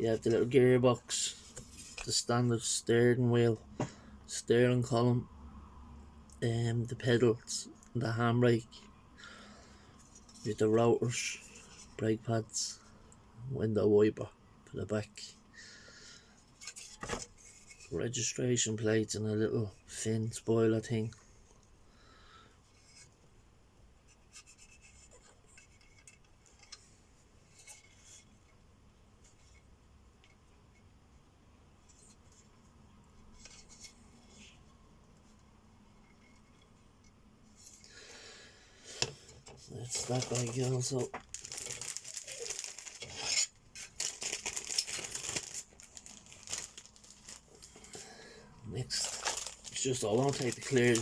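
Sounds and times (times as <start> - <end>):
bags rustling: 39.7 - 48.1, 48.7 - 51.0.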